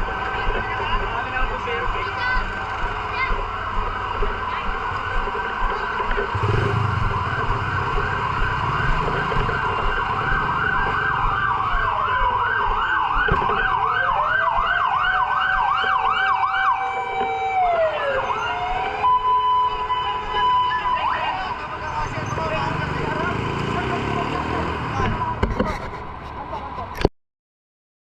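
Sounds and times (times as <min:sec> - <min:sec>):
siren yelping: 0:00.0 - 0:26.2
sirens wailing: 0:00.0 - 0:26.9.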